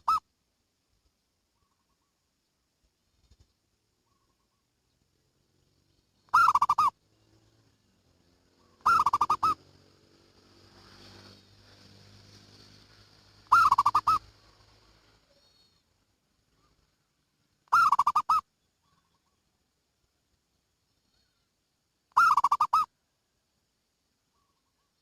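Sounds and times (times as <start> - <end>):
dove cooing: 0.0 - 0.2, 6.3 - 7.0, 8.6 - 9.6, 13.5 - 14.6, 17.7 - 19.4, 22.2 - 22.9.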